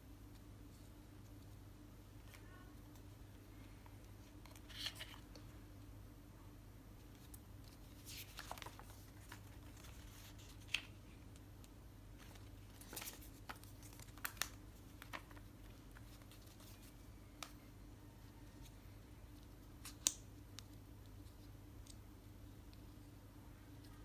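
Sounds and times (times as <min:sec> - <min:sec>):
faint steady hum: 0:00.0 - 0:24.0
packaging rustling and clicking: 0:12.2 - 0:16.9.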